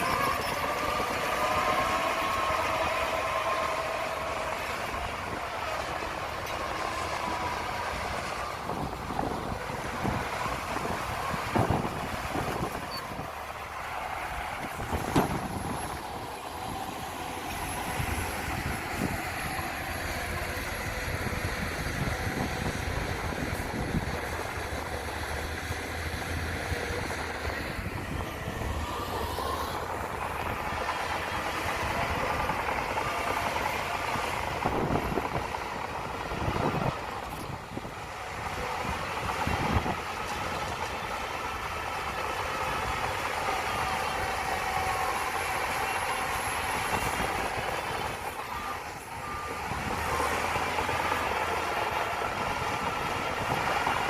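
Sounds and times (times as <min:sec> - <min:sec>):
diesel machinery running under load: 0:00.0 - 0:54.0.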